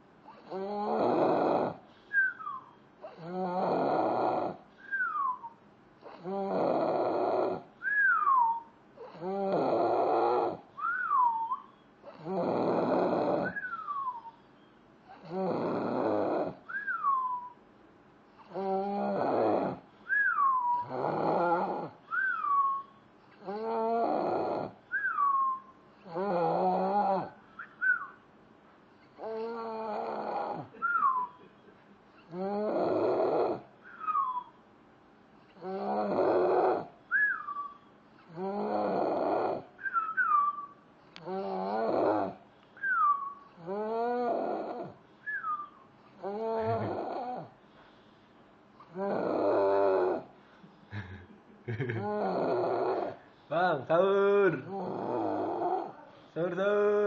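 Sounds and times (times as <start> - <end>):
man snoring: 0.4 - 1.8, 3.0 - 4.6, 6.0 - 7.7, 9.0 - 10.6, 12.1 - 13.8, 15.1 - 16.8, 18.5 - 19.8, 20.7 - 22.2, 23.4 - 24.8, 26.0 - 27.3, 29.2 - 30.7, 32.3 - 33.7, 35.6 - 36.9, 38.3 - 39.7, 41.2 - 42.4, 43.6 - 45.0, 46.2 - 47.5, 48.9 - 50.3, 50.9 - 57.0.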